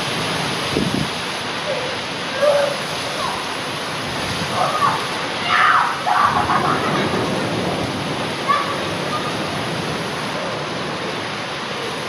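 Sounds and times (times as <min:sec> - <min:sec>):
heavy rain pouring: 0:00.0 - 0:12.0
raised voices: 0:04.4 - 0:10.8.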